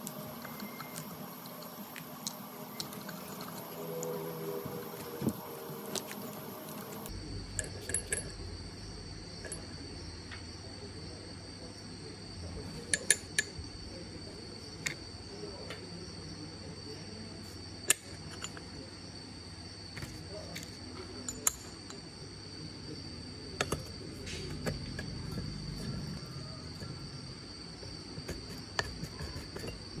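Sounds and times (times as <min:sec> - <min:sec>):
high-pitched insect drone: 0:00.0 - 0:11.2.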